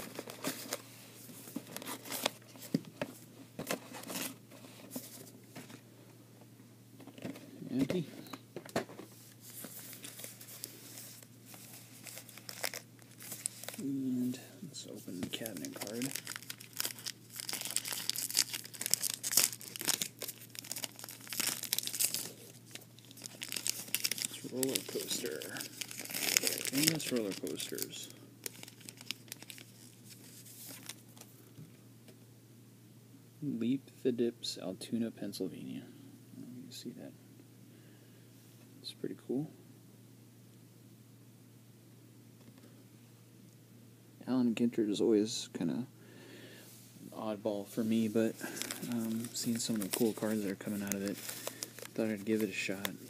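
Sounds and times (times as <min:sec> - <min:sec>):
foil wrappers crinkling: 0:09.7 - 0:13.9, 0:15.1 - 0:31.2, 0:48.1 - 0:53.0.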